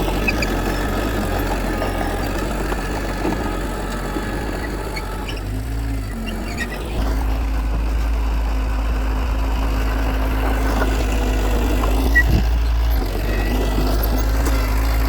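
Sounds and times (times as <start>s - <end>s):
heavy machinery diesel engine: 0.0s - 15.0s.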